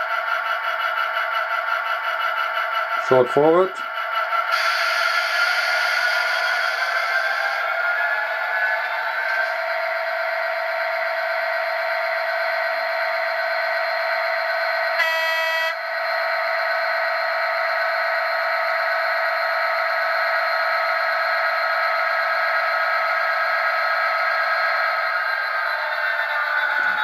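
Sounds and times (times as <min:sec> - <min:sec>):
model diesel engine sound: 0:00.0 - 0:27.0
short horn blast: 0:15.0 - 0:15.8.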